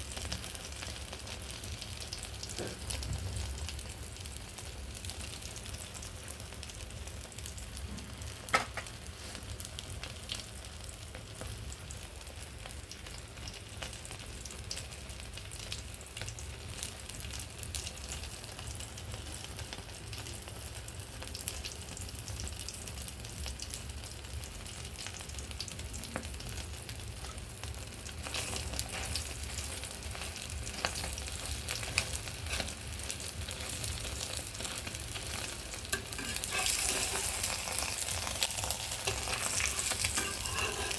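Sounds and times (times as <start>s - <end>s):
egg sizzling in oil: 0.0s - 40.9s
oil crackling: 27.8s - 40.9s.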